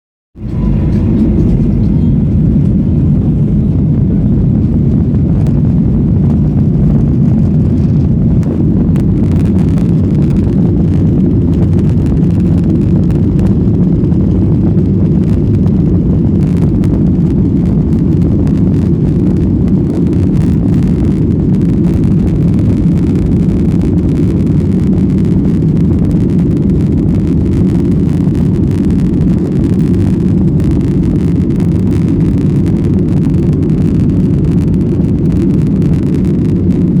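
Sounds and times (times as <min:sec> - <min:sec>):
jet engines rumbling: 0:00.4 - 0:37.0.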